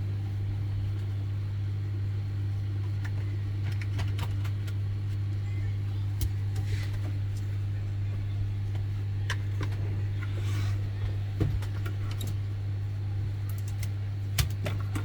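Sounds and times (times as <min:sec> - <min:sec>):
low electrical hum: 0:00.0 - 0:15.0.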